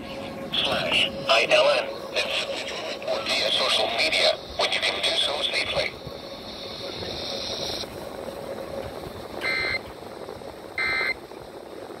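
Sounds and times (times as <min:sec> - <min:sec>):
radio hiss: 0:00.2 - 0:08.0.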